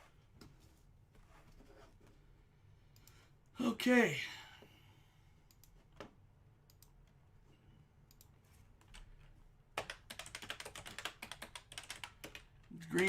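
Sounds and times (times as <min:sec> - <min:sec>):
computer keyboard typing: 0:09.8 - 0:13.0.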